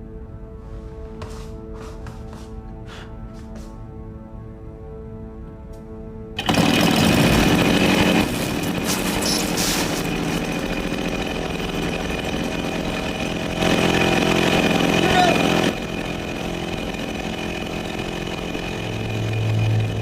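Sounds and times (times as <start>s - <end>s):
soft music: 0.0s - 6.4s
loud motorised power tool: 6.4s - 20.0s.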